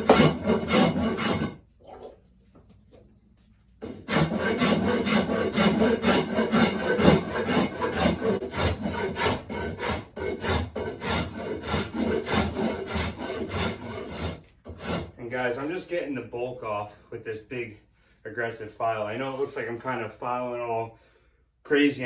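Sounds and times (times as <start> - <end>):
file rasping on wood: 0.0 - 1.6, 3.8 - 15.2.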